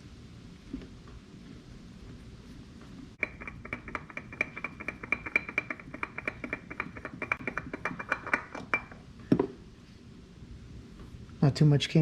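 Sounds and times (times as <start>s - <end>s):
ratchet wrench clicking: 3.2s - 9.0s.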